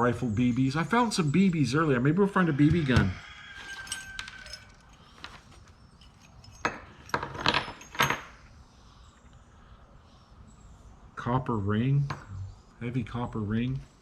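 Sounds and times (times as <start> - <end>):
small metal objects clinking: 2.8 - 8.4.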